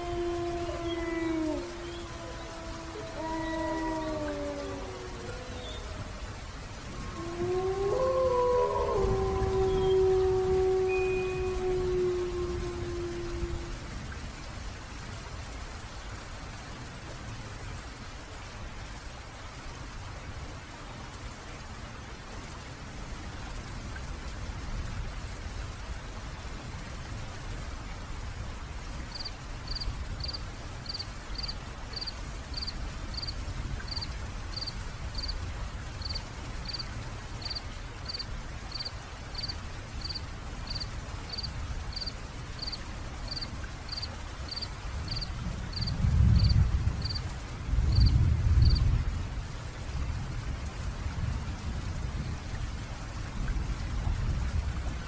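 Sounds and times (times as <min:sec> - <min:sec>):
steady rain: 0:00.0 - 0:55.0
thunder rumbling: 0:45.4 - 0:49.3.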